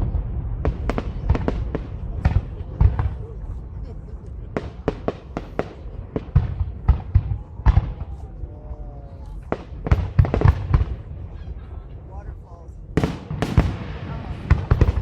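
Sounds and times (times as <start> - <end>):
fireworks bangs: 0.0 - 3.8, 4.4 - 8.3, 9.4 - 11.5, 13.0 - 15.0.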